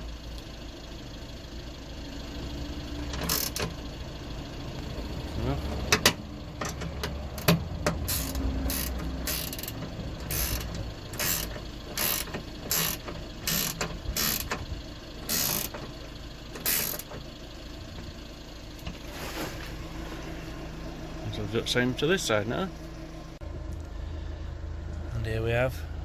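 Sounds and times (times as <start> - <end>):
ratchet wrench clicking: 3.2 - 3.7, 7.0 - 14.6, 15.2 - 15.9, 16.5 - 17.2.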